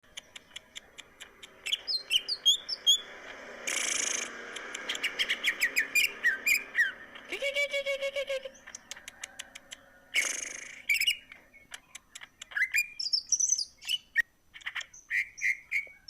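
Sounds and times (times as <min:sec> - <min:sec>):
bird singing chirps and whistles: 0:01.6 - 0:03.1, 0:04.9 - 0:07.4, 0:10.2 - 0:11.8, 0:12.4 - 0:16.0.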